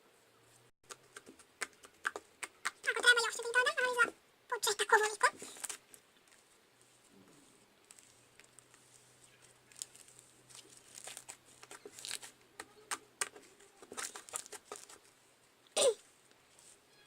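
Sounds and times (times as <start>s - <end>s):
slime squeezed with sticky crackles: 9.7s - 15.0s.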